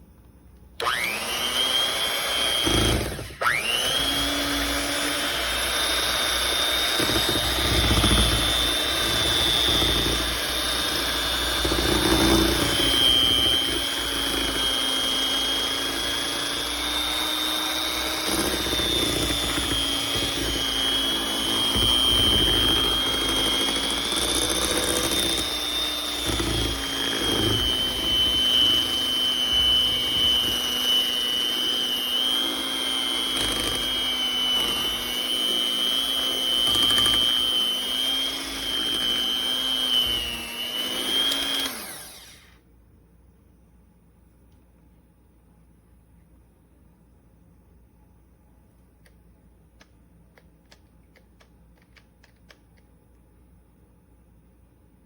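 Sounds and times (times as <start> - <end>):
electric hand mixer motor whining: 0.8 - 42.6.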